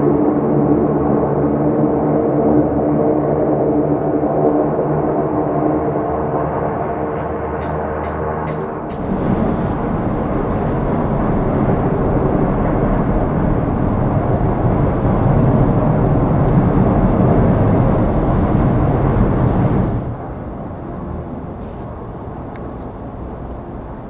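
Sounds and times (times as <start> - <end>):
turboprop engines roaring: 0.0 - 24.0.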